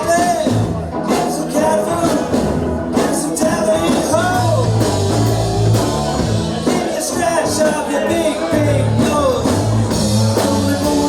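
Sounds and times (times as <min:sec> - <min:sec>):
bass line: 0:00.0 - 0:11.0
person singing: 0:00.0 - 0:11.0
rock and roll band playing: 0:00.0 - 0:11.0.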